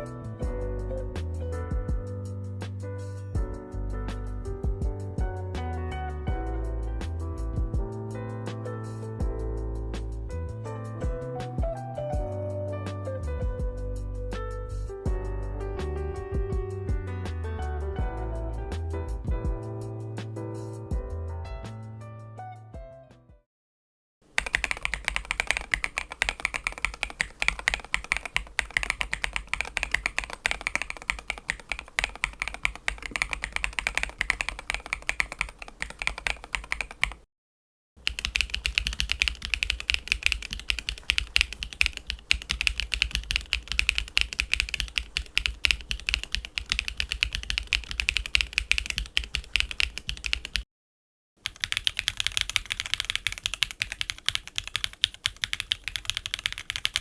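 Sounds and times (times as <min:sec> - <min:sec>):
mechanical keyboard typing: 0:24.3 - 0:37.2, 0:38.0 - 0:50.6, 0:51.4 - 0:57.0.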